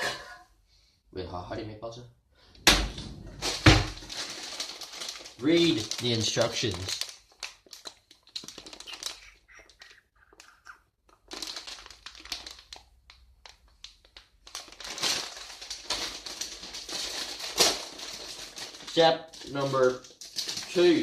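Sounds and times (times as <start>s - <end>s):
plastic food packet crinkling: 3.3s - 21.0s.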